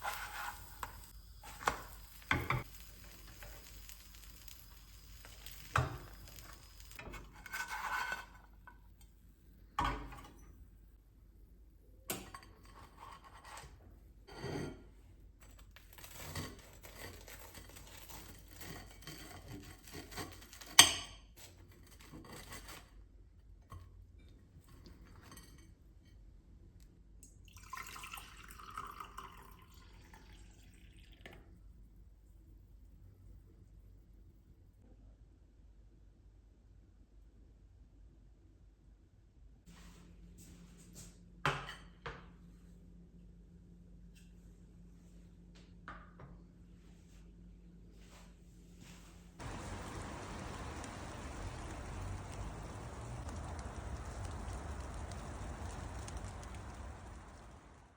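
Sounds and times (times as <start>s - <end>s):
liquid pouring: 27.4s - 31.4s.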